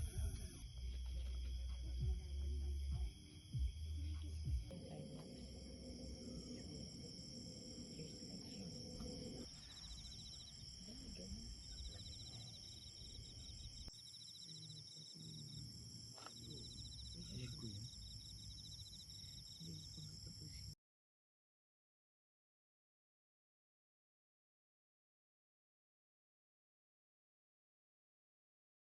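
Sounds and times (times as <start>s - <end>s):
insects chirring: 0.0s - 20.8s.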